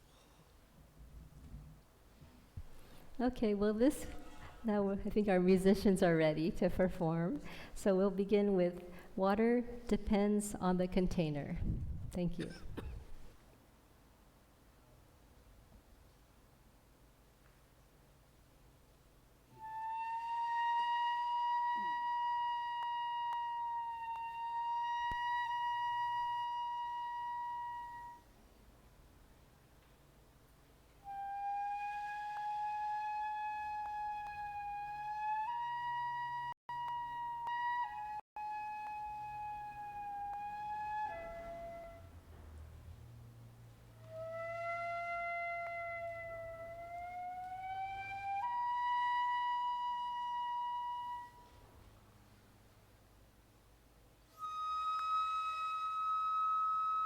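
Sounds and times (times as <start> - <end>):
wind instrument holding high note: 19.6 - 28.2, 44.0 - 51.6.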